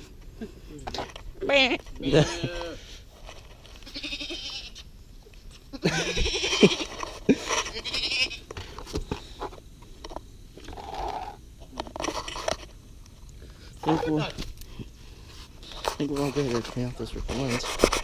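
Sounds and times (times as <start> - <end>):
person imitating goat bleats: 1.4 - 2.8, 3.8 - 4.8, 5.7 - 6.9, 7.6 - 8.4.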